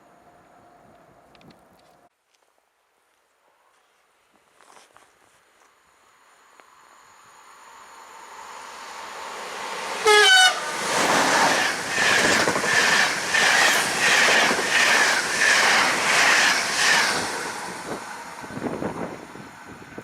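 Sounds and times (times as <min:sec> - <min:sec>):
train horn blast: 0:10.0 - 0:10.8
train wheels clattering over rail joints: 0:10.9 - 0:18.0.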